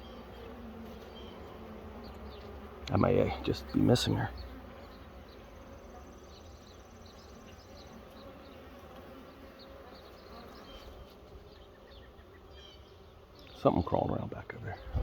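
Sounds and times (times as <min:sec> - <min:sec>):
bees buzzing: 0:00.0 - 0:15.0
small ticks: 0:02.0 - 0:03.0.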